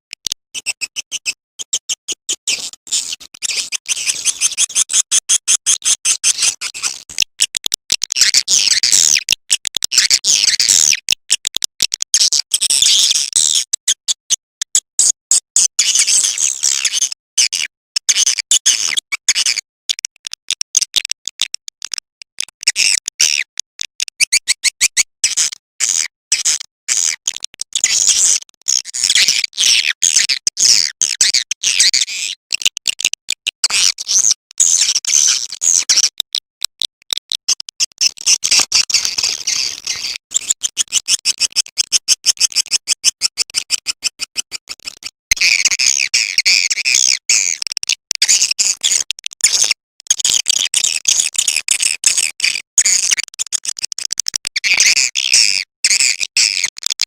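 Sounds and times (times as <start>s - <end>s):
rapid high-pitched bird chirps: 0.5s - 7.6s, 8.2s - 11.2s, 12.2s - 14.2s, 15.0s - 19.6s, 24.2s - 32.4s, 38.0s - 47.6s.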